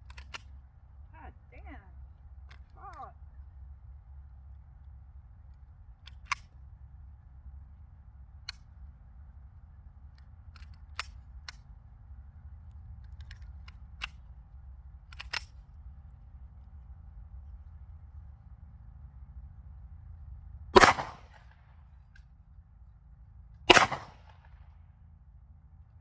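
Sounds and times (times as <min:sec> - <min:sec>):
low wind rumble: 0:00.0 - 0:26.0
handgun shots: 0:20.8 - 0:21.4, 0:23.7 - 0:24.4.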